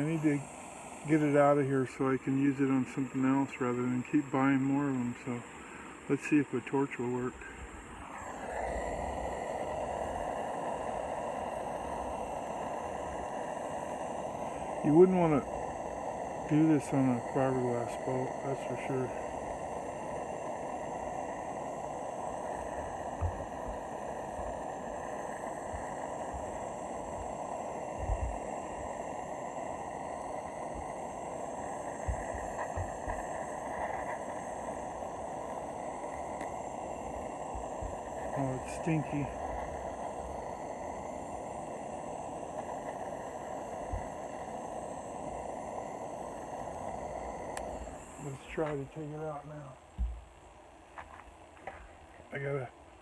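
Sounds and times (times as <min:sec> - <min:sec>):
gas torch flame hissing: 0:00.0 - 0:53.0
low thumps: 0:49.9 - 0:50.3.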